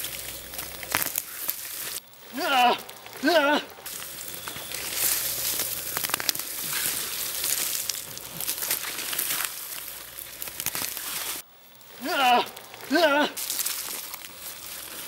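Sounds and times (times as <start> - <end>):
dry leaves rustling and crackling: 0.0 - 15.0
sharp snaps and clicks: 0.0 - 15.0.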